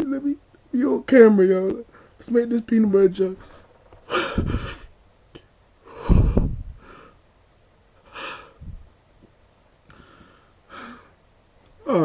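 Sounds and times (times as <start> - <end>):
man breathing heavily: 3.4 - 4.9, 5.8 - 7.2, 8.0 - 8.8, 9.9 - 11.2.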